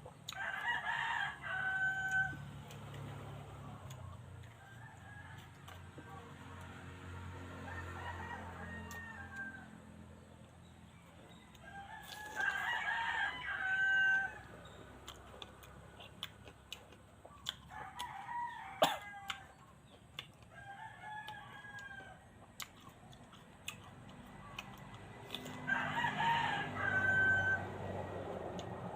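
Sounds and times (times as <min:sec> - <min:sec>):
rooster crowing: 0:00.3 - 0:02.5, 0:07.5 - 0:09.9, 0:11.2 - 0:14.8, 0:17.7 - 0:19.6, 0:24.7 - 0:28.9.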